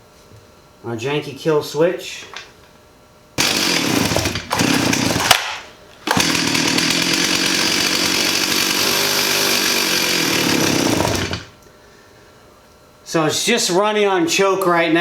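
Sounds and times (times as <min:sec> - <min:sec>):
chainsaw engine running: 0:03.4 - 0:11.6.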